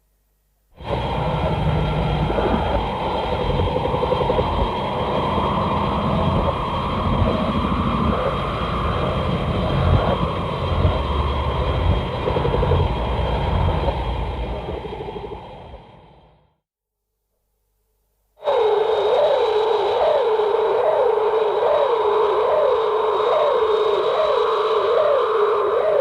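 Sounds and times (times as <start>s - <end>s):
faint steady whine: 0.0s - 16.6s, 17.2s - 26.0s
monster rumbling churning noise: 0.8s - 16.3s.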